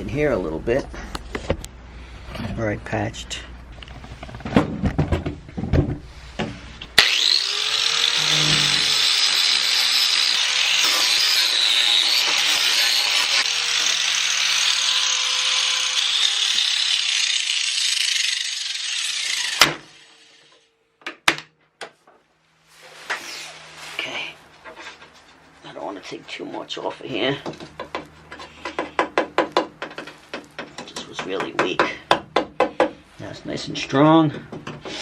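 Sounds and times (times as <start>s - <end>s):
angle grinder grinding metal: 6.9s - 20.7s.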